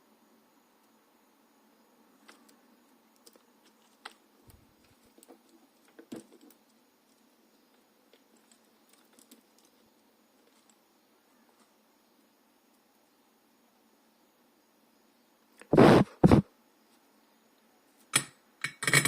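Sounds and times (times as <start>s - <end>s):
small tools clicking and tapping: 2.2s - 10.8s, 18.1s - 19.0s.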